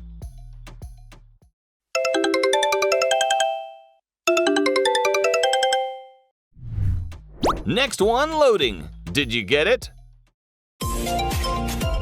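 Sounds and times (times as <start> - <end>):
phone ringtone chiming melody: 2.0 - 6.2
low whoosh: 6.6 - 7.9.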